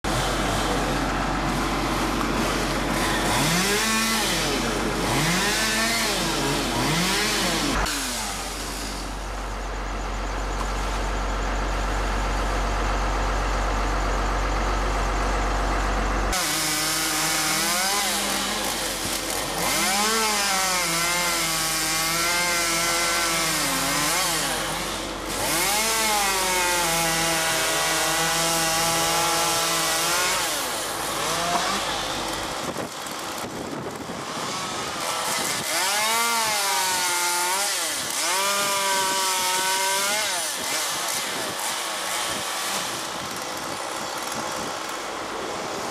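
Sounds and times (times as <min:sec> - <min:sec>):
chainsaw revving while cutting: 0:01.6 - 0:09.1, 0:16.3 - 0:45.9
steady low hum: 0:07.4 - 0:16.4.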